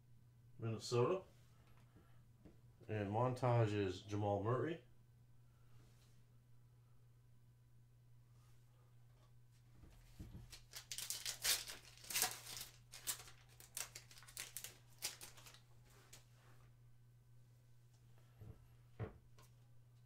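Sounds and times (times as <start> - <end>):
wrapper tearing and crinkling: 10.5 - 15.6.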